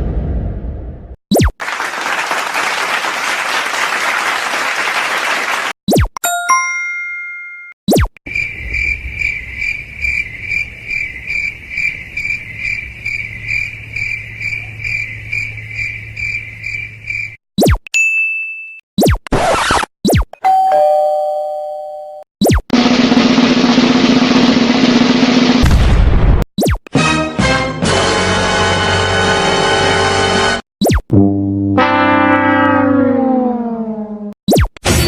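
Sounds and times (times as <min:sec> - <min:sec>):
bright chime notes: 0:06.2 - 0:07.8
cricket chirp effect: 0:08.3 - 0:17.4.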